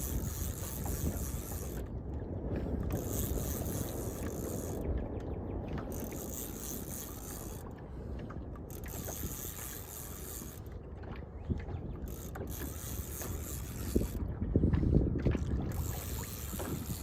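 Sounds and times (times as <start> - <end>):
fishing reel ticking and whirring: 0.0 - 2.0, 2.7 - 4.8, 5.8 - 7.8, 8.6 - 10.8, 11.9 - 14.2, 15.3 - 17.0
low wind rumble: 0.0 - 17.0.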